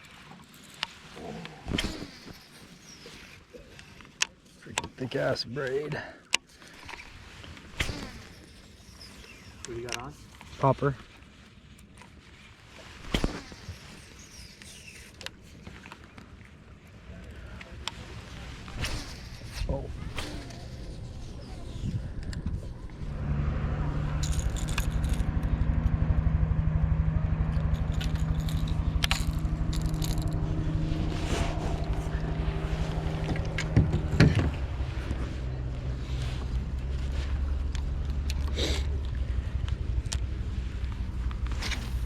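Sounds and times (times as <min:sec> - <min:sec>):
boat motor running: 0:18.6 - 0:42.0.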